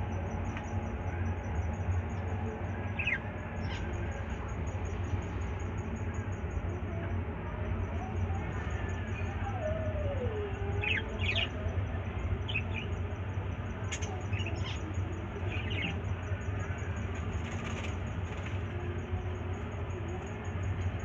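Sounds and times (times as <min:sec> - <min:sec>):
steady low hum: 0:00.0 - 0:21.0
pet birds chirping: 0:02.9 - 0:05.0, 0:08.0 - 0:17.9.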